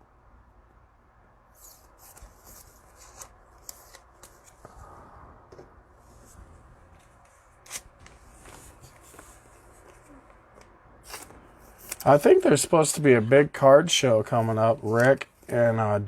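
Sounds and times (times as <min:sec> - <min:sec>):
cards sliding and clicking: 0:01.6 - 0:04.7, 0:07.0 - 0:12.2.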